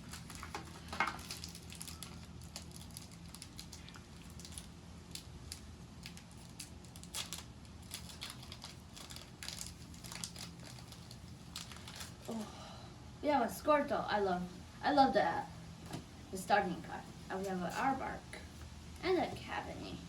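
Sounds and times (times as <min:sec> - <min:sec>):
foil packaging crinkling: 0:00.0 - 0:12.4.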